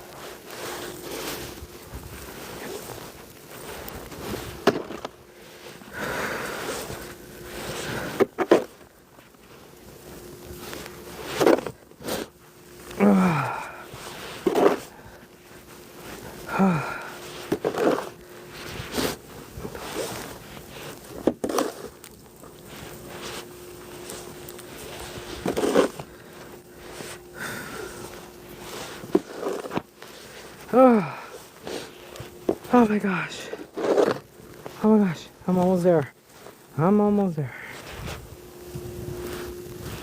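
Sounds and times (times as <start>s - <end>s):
snow shovel scraping snow: 0.0s - 40.0s
person grunting with effort: 13.0s - 13.9s, 16.5s - 17.1s, 30.7s - 31.3s.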